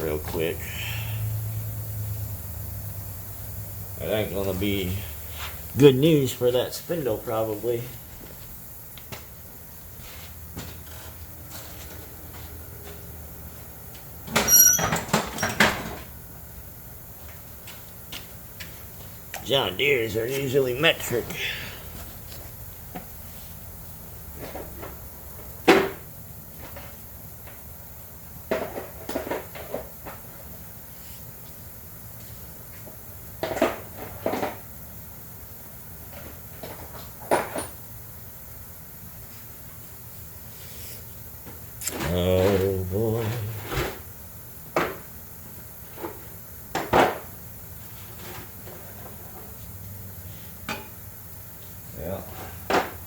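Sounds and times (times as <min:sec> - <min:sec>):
hand tools clanking: 0:14.3 - 0:15.6.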